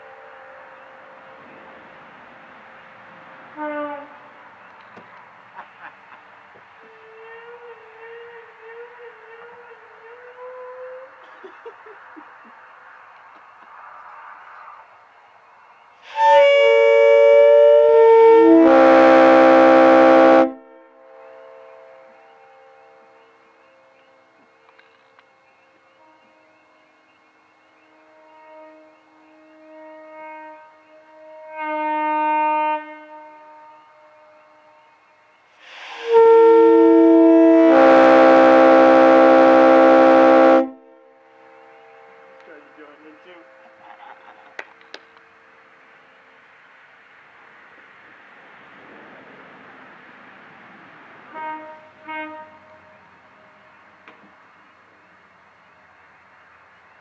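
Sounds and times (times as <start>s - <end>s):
horn echo: 3.5s - 4.6s, 16.0s - 24.4s, 27.7s - 35.0s, 35.7s - 43.9s, 51.2s - 53.8s
air horns blasting chords: 16.0s - 23.3s, 27.8s - 34.9s, 35.6s - 43.9s, 51.2s - 53.7s.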